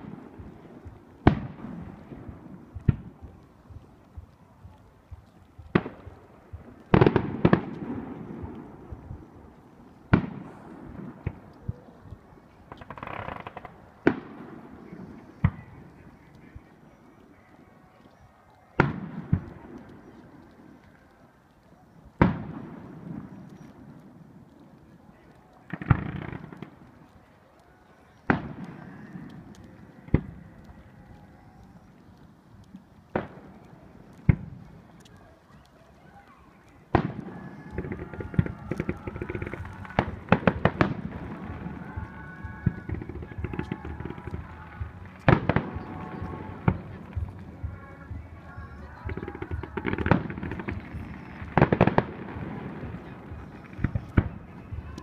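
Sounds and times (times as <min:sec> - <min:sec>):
fireworks bursting: 0:00.0 - 0:55.0
fireworks crackling: 0:00.0 - 0:55.0.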